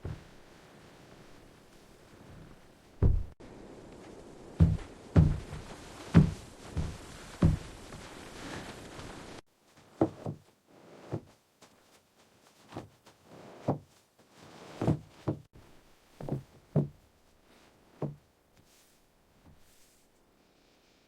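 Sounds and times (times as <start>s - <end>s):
steady hiss: 0.0s - 9.4s
dull knocks: 3.0s - 3.4s.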